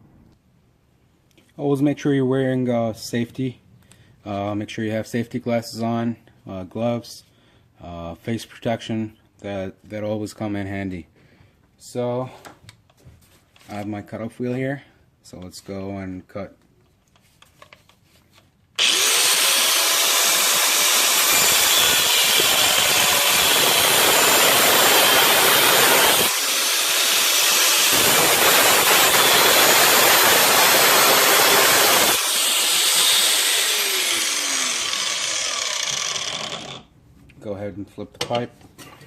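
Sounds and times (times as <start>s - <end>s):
cutoff wheel grinding metal pipe: 18.8s - 36.9s.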